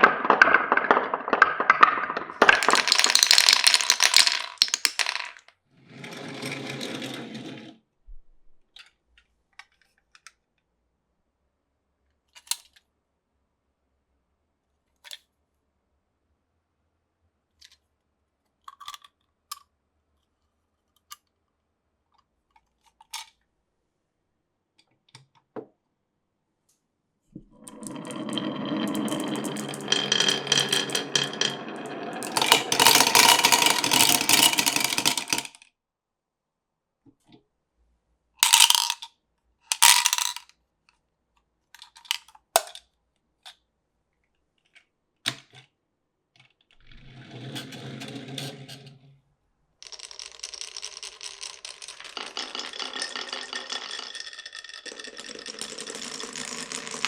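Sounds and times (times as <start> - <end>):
loud sharp clatters: 0.0 - 5.3
marbles clicking and knocking: 0.0 - 5.5, 27.4 - 35.6, 38.4 - 39.1, 39.7 - 40.4, 49.8 - 57.0
marbles rolling and rattling: 0.0 - 7.6, 27.4 - 35.6, 38.4 - 39.1, 39.7 - 40.4, 49.8 - 57.0.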